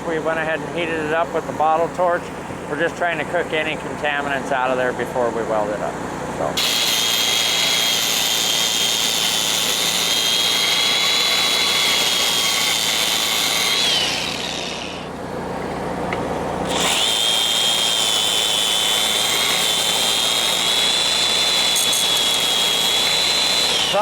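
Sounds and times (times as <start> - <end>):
power tool whining on metal: 6.6 - 15.2, 16.6 - 24.0.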